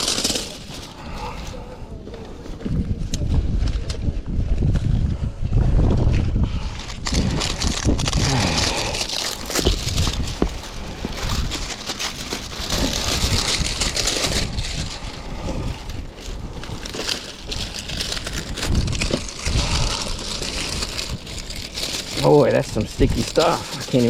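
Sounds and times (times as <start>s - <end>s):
plastic crinkling: 0.0s - 1.6s, 6.6s - 24.0s.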